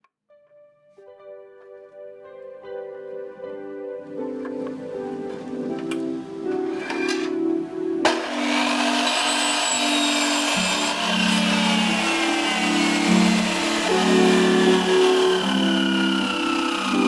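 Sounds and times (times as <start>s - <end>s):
background music: 0.3s - 17.0s
electric saw cutting wood: 6.6s - 17.0s.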